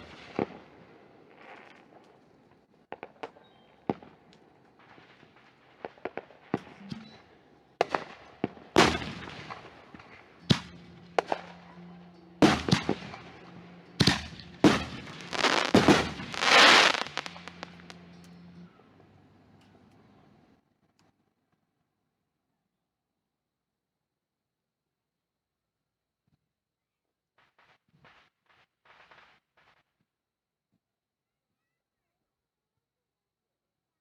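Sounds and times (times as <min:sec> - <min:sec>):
fireworks bangs: 0:00.0 - 0:02.1, 0:07.8 - 0:18.2
fireworks crackling: 0:00.0 - 0:06.8, 0:07.8 - 0:18.5, 0:27.4 - 0:29.8.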